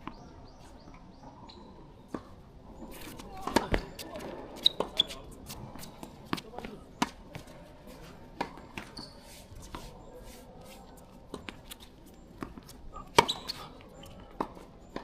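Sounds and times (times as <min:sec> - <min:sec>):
shoe squeaks on court floor: 0:02.9 - 0:05.2, 0:08.8 - 0:09.9, 0:13.2 - 0:13.7.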